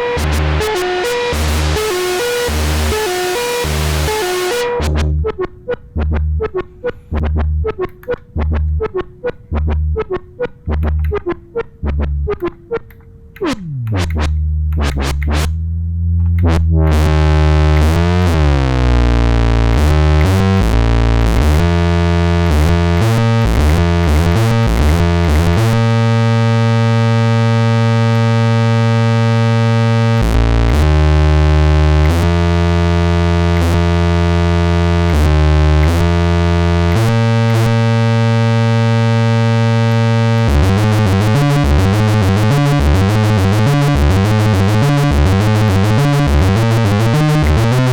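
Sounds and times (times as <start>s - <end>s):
buzzy synthesizer bass line: 0.0s - 12.8s, 13.4s - 47.9s.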